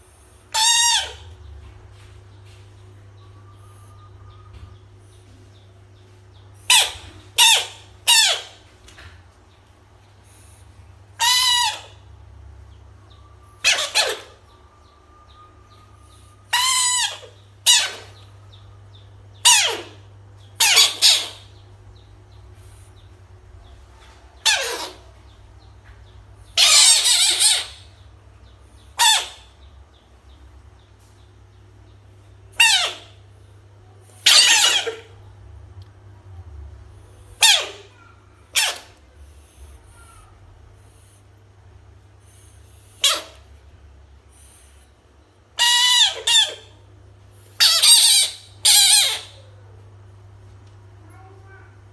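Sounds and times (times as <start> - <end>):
frog squealing cries: 20.6 - 21.5, 32.6 - 33.2, 34.2 - 35.1, 47.6 - 49.6.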